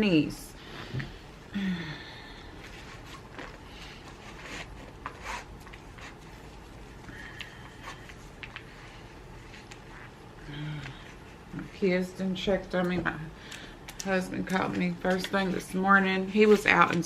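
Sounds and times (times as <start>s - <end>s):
low hum: 0.0s - 14.0s
clothing rustling: 2.6s - 11.8s.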